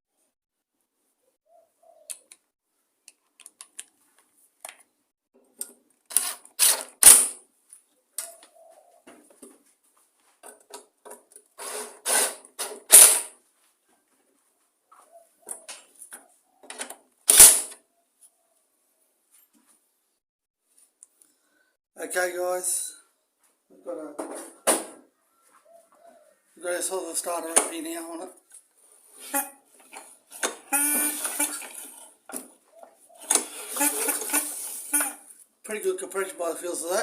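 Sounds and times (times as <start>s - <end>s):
short rattling bursts: 17.3s - 17.7s, 29.2s - 32.1s, 33.2s - 35.2s.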